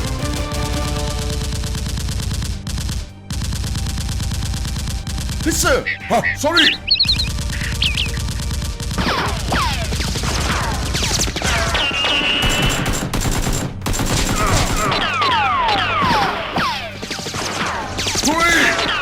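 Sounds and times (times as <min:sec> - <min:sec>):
machine-gun fire: 0:00.0 - 0:05.6, 0:07.0 - 0:16.4
falling whistles: 0:06.7 - 0:08.2.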